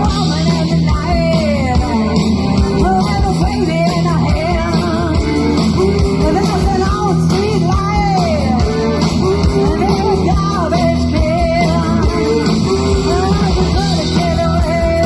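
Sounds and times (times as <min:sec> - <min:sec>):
live rock band playing: 0:00.0 - 0:15.0
person singing: 0:00.0 - 0:15.0.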